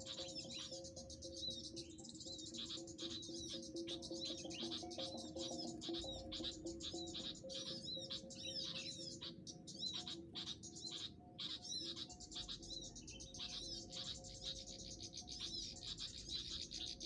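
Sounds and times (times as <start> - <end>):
background music with held notes: 0.0 - 17.0
small birds twittering: 0.0 - 17.0.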